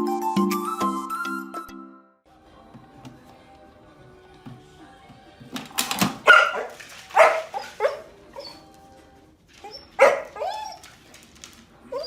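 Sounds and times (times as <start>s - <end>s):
dog barking: 6.2s - 8.7s, 9.6s - 10.9s
dog yelping: 6.2s - 8.7s, 9.6s - 11.1s.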